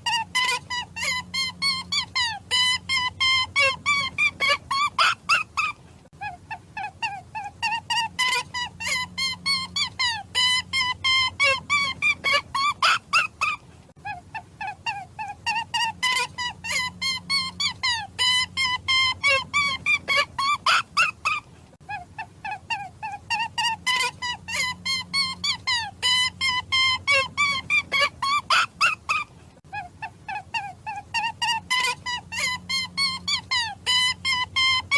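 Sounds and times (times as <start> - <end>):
animal high-pitched calls: 0.0 - 34.9
low steady hum: 0.0 - 34.9.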